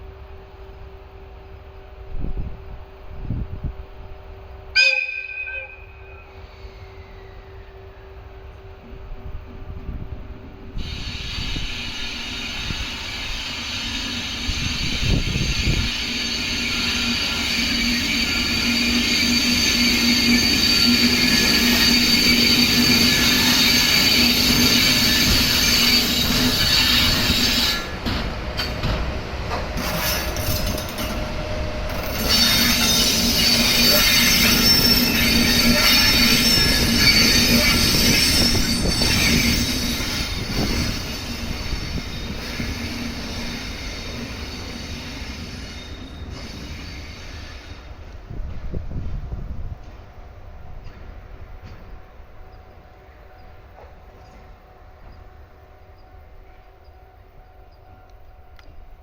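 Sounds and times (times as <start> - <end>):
low train rumble: 0.0 - 59.0
train wheels squealing on rails: 4.8 - 10.0, 10.7 - 59.0.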